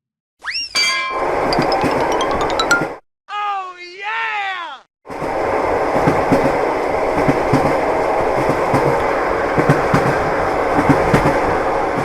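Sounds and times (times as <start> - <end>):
train rumble: 5.1 - 12.0
wheels clattering on track: 5.2 - 12.0.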